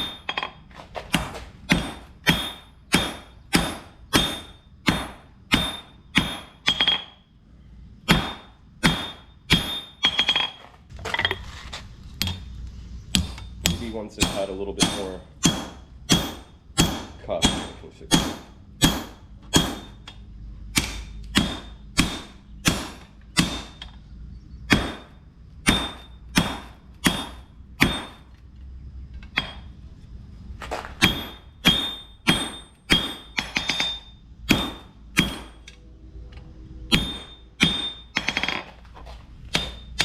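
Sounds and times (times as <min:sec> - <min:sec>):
hammer ringing on anvil: 0:01.7 - 0:07.2, 0:08.1 - 0:10.6, 0:13.1 - 0:20.0, 0:24.7 - 0:28.3, 0:31.0 - 0:35.6, 0:36.9 - 0:38.6, 0:39.5 - 0:40.0.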